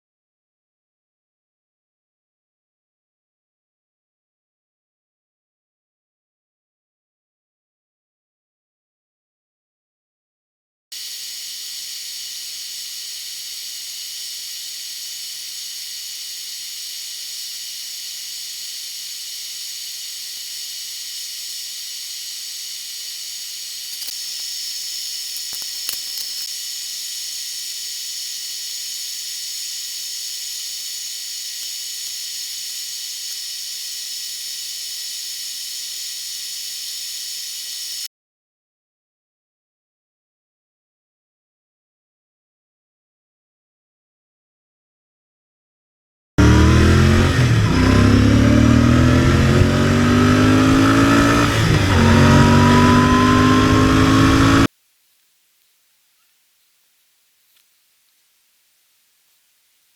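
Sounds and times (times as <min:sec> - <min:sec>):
high-pitched hissing: 0:10.9 - 0:38.1, 0:46.4 - 0:54.7
faint whistle-like tones: 0:11.0 - 0:38.1.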